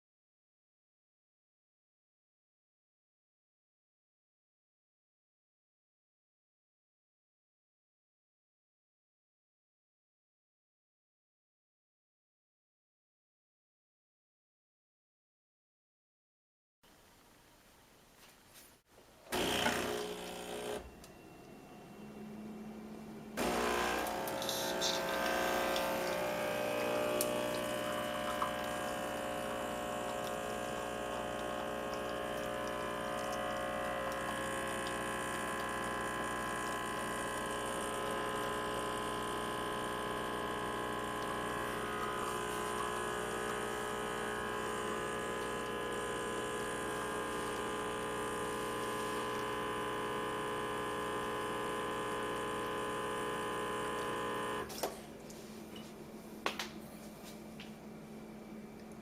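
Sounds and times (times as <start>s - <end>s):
espresso machine pump buzzing: 19.3s - 21.1s, 23.4s - 55.0s.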